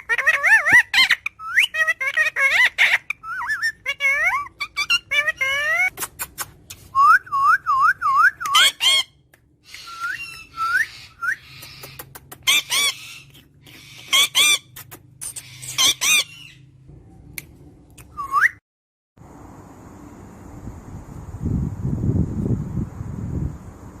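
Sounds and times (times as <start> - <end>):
bird whistling notes: 6.9 - 16.6
harsh bird squawks: 8.5 - 16.7.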